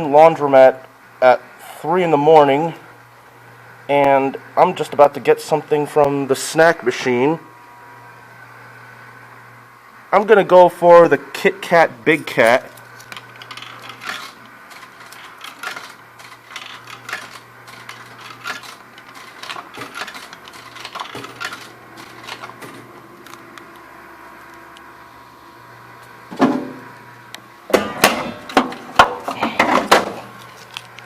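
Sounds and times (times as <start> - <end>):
vending machine motor drone: 0.0 - 31.0
vending machine clicks: 13.2 - 22.9.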